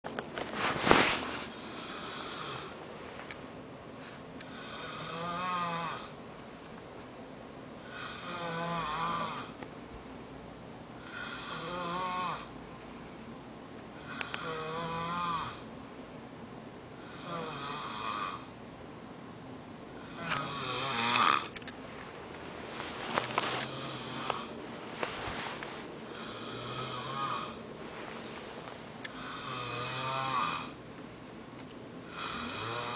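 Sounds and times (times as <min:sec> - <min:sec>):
person snoring: 0:01.5 - 0:02.8, 0:04.4 - 0:06.2, 0:07.8 - 0:09.6, 0:11.0 - 0:12.5, 0:14.0 - 0:15.6, 0:17.0 - 0:18.5, 0:20.0 - 0:21.6, 0:22.8 - 0:24.6, 0:26.1 - 0:27.6, 0:29.1 - 0:30.8, 0:32.0 - 0:32.9.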